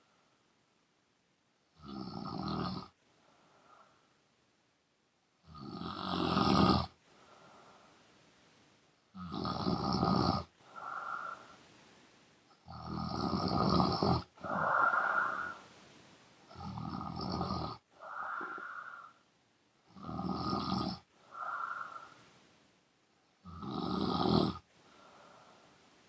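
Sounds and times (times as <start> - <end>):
woman snoring loudly: 1.8 - 3.0, 5.5 - 7.0, 9.2 - 11.4, 12.7 - 15.6, 16.5 - 19.2, 19.9 - 22.1, 23.4 - 24.7.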